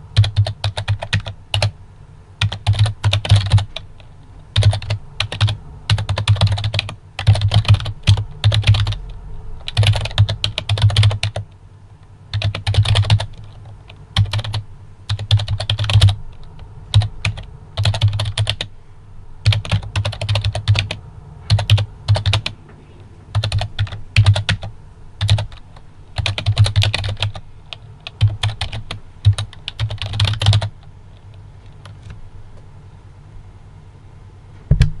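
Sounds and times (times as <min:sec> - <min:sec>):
typing on a keyboard: 0:00.2 - 0:01.7, 0:02.4 - 0:03.8, 0:04.6 - 0:09.0, 0:09.6 - 0:11.4, 0:12.3 - 0:16.2, 0:16.9 - 0:18.7, 0:19.4 - 0:22.5, 0:23.3 - 0:25.6, 0:26.2 - 0:27.4, 0:28.0 - 0:30.7.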